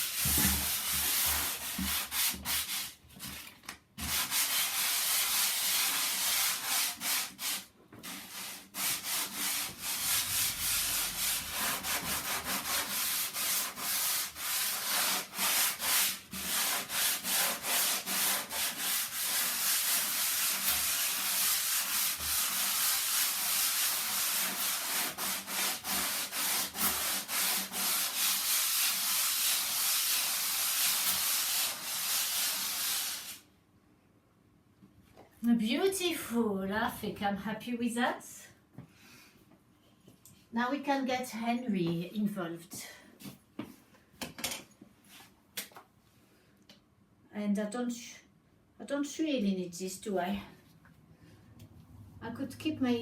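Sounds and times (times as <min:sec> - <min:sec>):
sandpaper rasping: 0:04.0 - 0:33.4.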